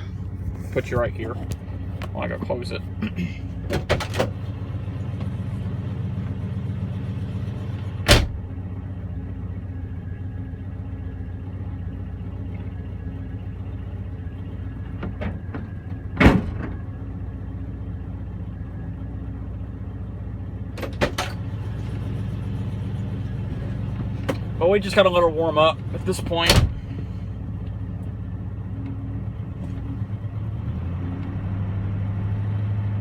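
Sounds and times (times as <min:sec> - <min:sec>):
car engine idling: 0:00.0 - 0:30.7
car hood slamming: 0:08.0 - 0:08.5, 0:16.2 - 0:16.8, 0:26.5 - 0:27.0.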